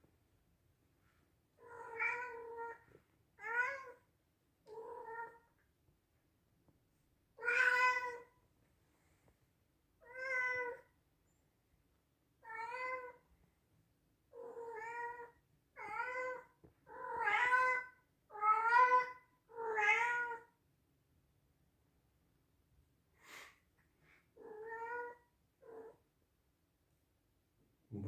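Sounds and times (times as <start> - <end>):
cat meowing loudly: 7.4 - 8.3, 14.6 - 20.5.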